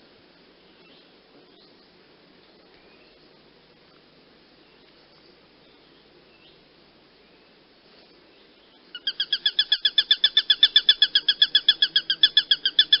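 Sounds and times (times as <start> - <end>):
hawk calling: 9.0 - 13.0.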